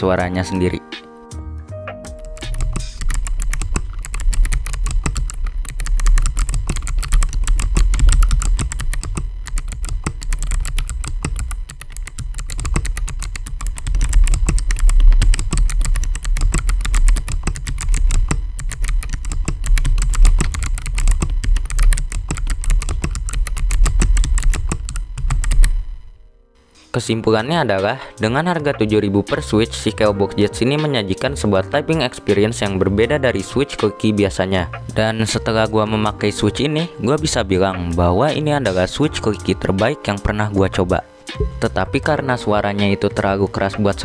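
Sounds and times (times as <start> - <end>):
clicky mechanical keyboard typing: 2.2 - 25.8.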